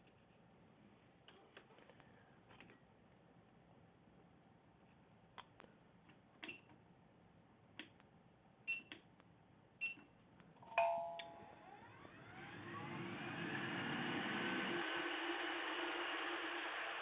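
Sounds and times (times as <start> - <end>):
sharp click with chime: 10.8 - 11.4
blower whine and hiss: 11.5 - 17.0.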